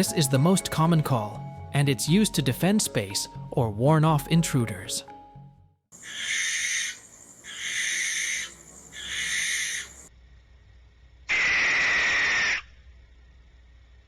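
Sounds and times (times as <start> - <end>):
owl screeching: 6.0 - 10.1, 11.3 - 12.8.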